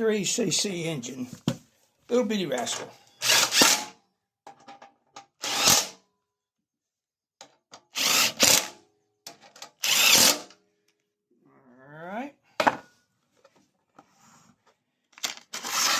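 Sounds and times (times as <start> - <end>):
power drill running: 3.2 - 3.9, 5.4 - 5.9, 7.9 - 8.7, 9.8 - 10.5, 15.6 - 15.9.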